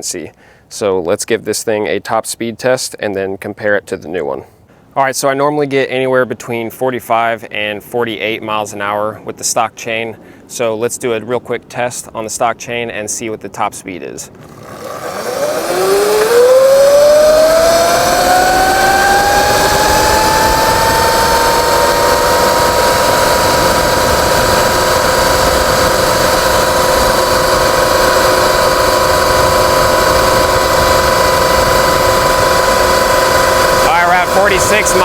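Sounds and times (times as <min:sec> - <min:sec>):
electric motor and chain whine: 0:14.3 - 0:35.0
wind noise: 0:14.3 - 0:35.0.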